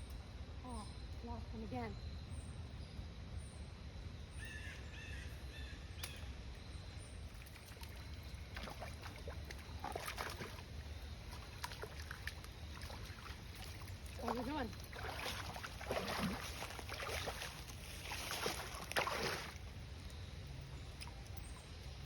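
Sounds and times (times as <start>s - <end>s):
river rumble: 7.7s - 21.9s.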